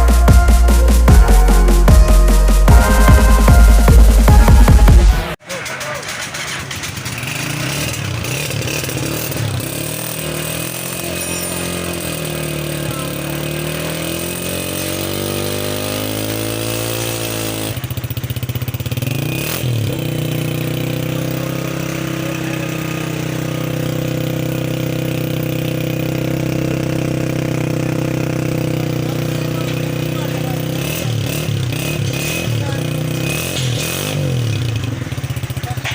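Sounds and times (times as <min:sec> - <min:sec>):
motorcycle engine running: 0:00.0 - 0:35.9
short rapid rattle: 0:05.4 - 0:13.2.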